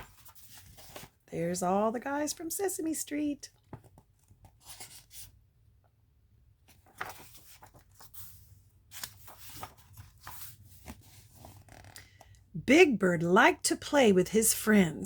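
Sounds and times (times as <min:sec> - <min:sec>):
paper pages turning: 0:00.0 - 0:01.2, 0:03.7 - 0:05.4, 0:06.7 - 0:12.3.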